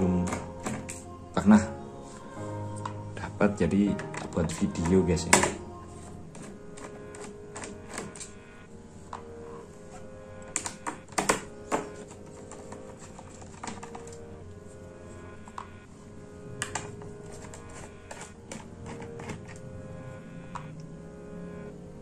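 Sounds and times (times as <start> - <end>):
plastic laptop case clicking: 10.5 - 14.2.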